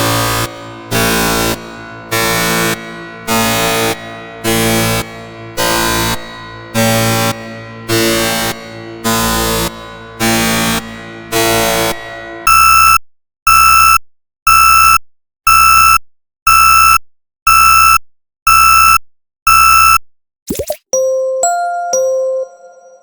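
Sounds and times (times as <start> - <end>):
electronic beeps: 14.6 - 21.3.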